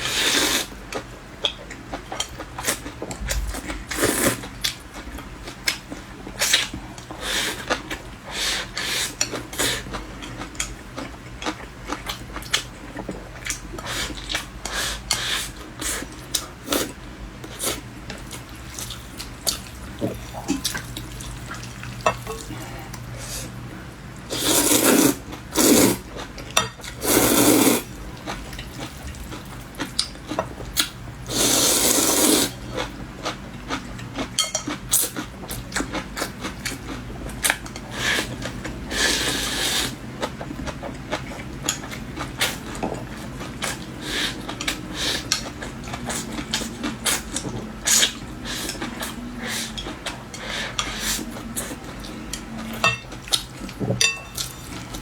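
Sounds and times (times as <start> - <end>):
slurping noodles: 24.3 - 26.1, 27.0 - 27.9, 31.3 - 32.6.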